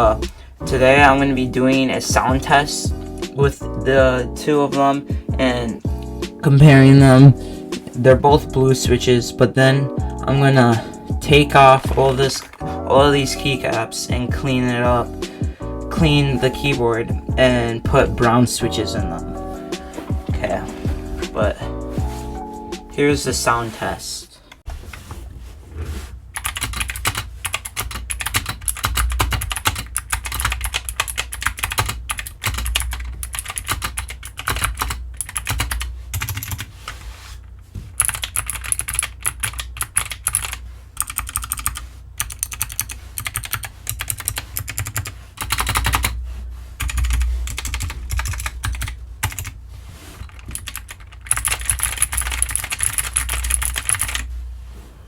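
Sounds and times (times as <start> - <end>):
fast typing on mechanical keyboard: 26.4 - 36.7, 38.0 - 46.2, 46.8 - 49.5, 50.3 - 54.3.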